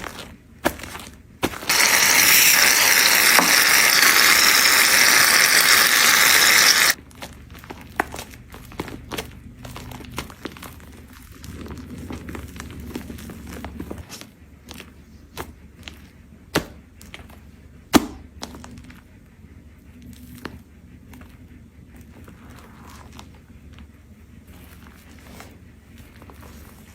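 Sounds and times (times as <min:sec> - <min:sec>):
low steady hum: 0:06.8 - 0:26.9.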